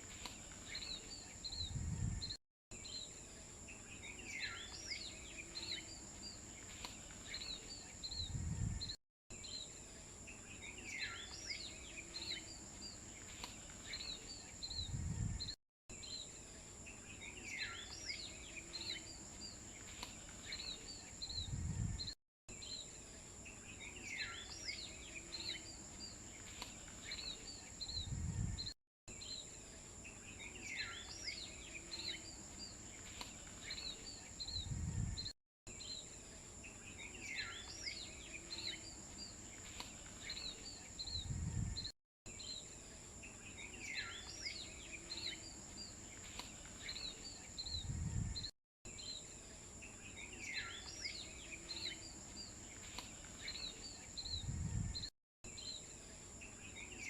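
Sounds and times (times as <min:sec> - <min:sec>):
bird chirps: 0:00.0 - 0:42.7, 0:43.3 - 0:57.0.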